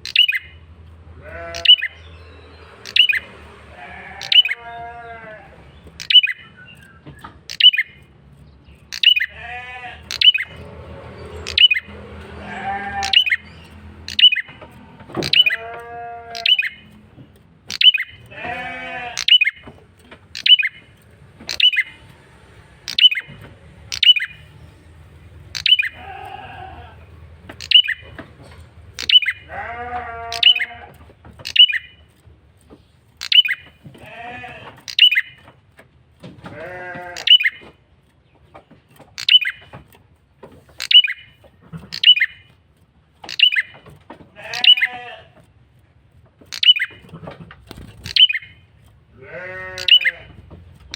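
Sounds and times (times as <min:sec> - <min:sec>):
bird sharp high chips: 0:00.0 - 0:00.7, 0:01.3 - 0:02.1, 0:02.7 - 0:35.5, 0:37.0 - 0:37.7, 0:39.0 - 0:39.8, 0:40.6 - 0:42.6, 0:43.2 - 0:45.4, 0:46.4 - 0:47.1, 0:47.7 - 0:50.4
harsh nasal bird call: 0:01.3 - 0:02.0, 0:08.9 - 0:10.6, 0:11.4 - 0:14.5, 0:15.2 - 0:16.9, 0:44.4 - 0:45.2, 0:49.4 - 0:50.3.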